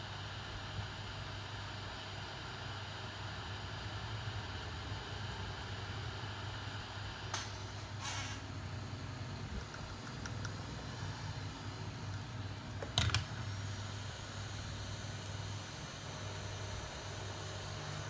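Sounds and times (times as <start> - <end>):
electric fan humming: 0.4 - 18.0
short clicks or scrapes: 8.0 - 8.4.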